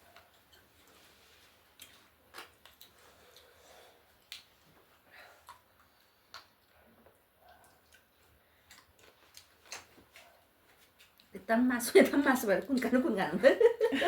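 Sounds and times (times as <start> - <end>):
chewing clicks and smacks: 1.7 - 3.6, 4.2 - 4.6, 5.4 - 6.8, 7.4 - 11.3.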